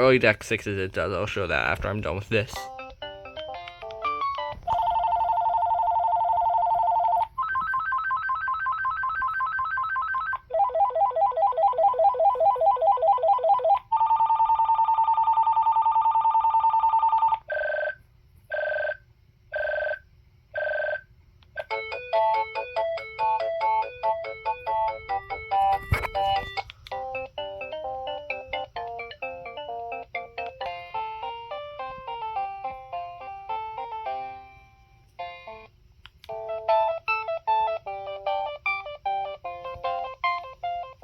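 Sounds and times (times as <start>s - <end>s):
phone ringtone melody: 2.7s - 17.9s, 21.6s - 34.6s.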